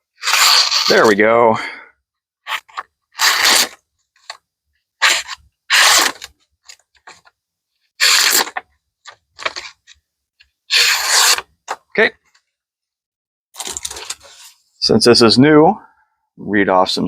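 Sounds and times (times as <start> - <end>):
knife blade slicing material: 10.7 - 11.8.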